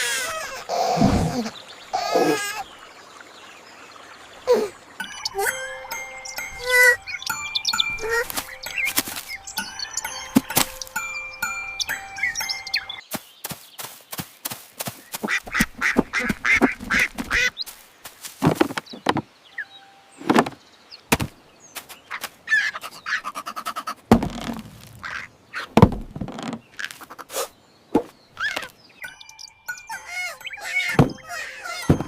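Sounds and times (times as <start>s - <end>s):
sharp knocks and thuds: 14.2s - 17.4s, 18.4s - 19.3s, 20.2s - 21.4s, 24.1s - 24.9s, 25.7s - 26.6s, 30.9s - 31.2s, 31.8s - 32.0s.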